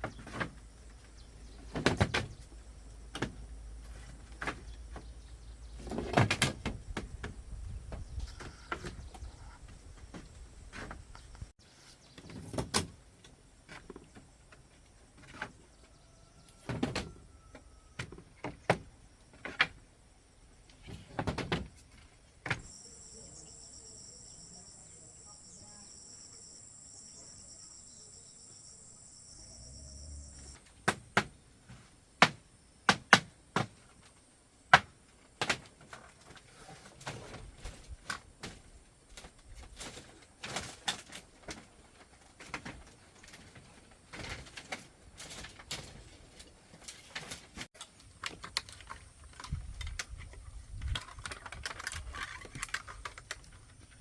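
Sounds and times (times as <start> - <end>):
insect trilling: 22.6 - 30.6.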